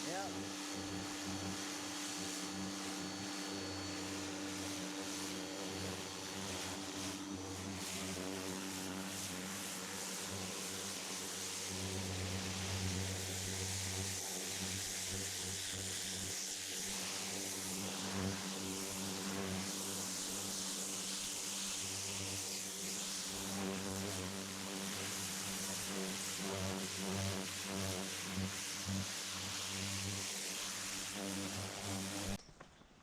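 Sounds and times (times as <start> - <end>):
motor hum: 0.0 - 32.4.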